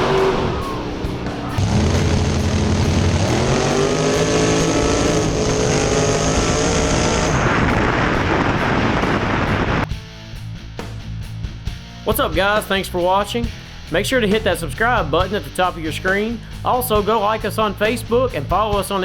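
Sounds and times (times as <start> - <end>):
race car engine accelerating: 0.0 - 9.9.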